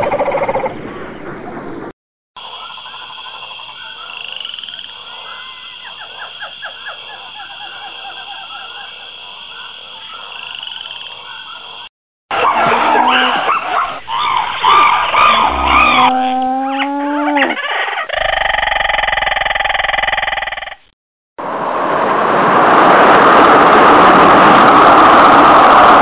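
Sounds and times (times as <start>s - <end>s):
frogs croaking: 2.4s - 11.9s, 18.0s - 20.8s.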